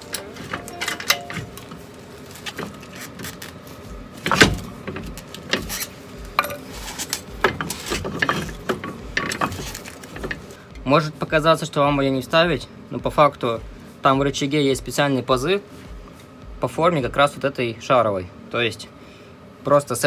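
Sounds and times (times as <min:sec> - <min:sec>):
metal clinks and knocks: 0:00.0 - 0:10.6.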